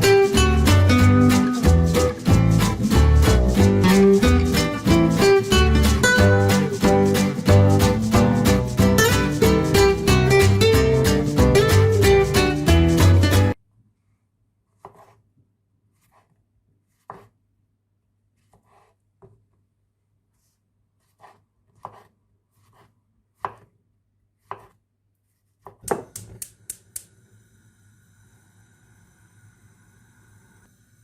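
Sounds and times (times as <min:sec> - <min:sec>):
knife chopping on cutting board: 0:14.8 - 0:15.2, 0:16.9 - 0:17.4, 0:18.5 - 0:19.4, 0:21.0 - 0:23.8, 0:24.4 - 0:24.8, 0:25.5 - 0:26.5.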